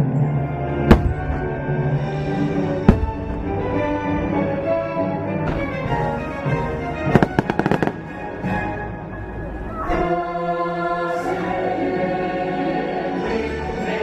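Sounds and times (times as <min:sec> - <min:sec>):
music playing: 0:00.0 - 0:14.0
firework bangs and crackles: 0:00.9 - 0:03.7, 0:07.0 - 0:08.7.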